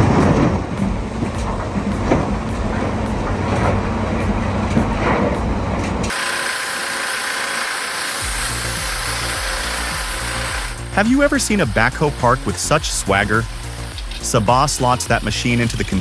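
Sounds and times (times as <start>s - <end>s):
diesel machinery rumbling: 0.0s - 6.1s, 8.2s - 16.0s
low engine hum: 0.0s - 6.1s
thin hiss: 0.0s - 16.0s.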